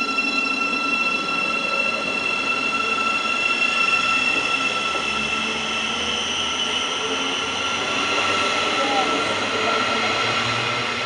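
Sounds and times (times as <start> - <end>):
electric train whine: 0.0 - 11.0
train rumble: 0.0 - 11.0.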